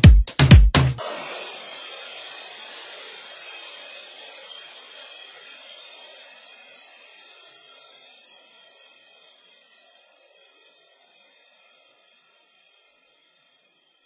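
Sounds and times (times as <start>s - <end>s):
electronic music beats: 0.0s - 3.8s
hissing noise wash: 1.0s - 10.8s.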